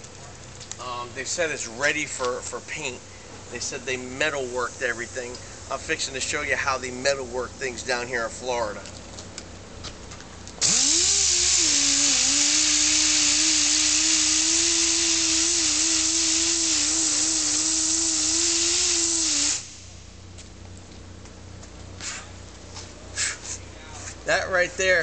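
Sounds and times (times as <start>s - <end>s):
handheld grinder cutting body filler: 10.6s - 19.6s.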